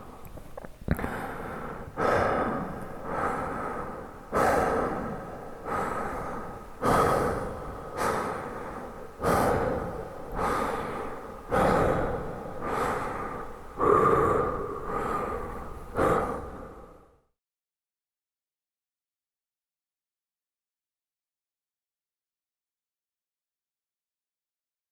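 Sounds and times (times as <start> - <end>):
man breathing deeply: 0.0 - 17.3.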